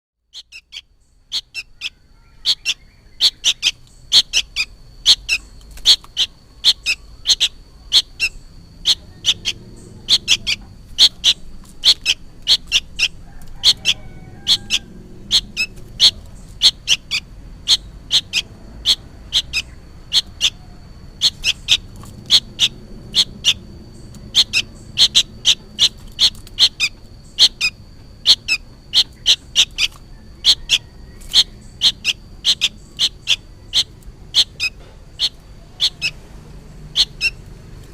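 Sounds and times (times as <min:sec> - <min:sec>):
bird calling sharply: 0:00.3 - 0:36.2, 0:36.9 - 0:37.4.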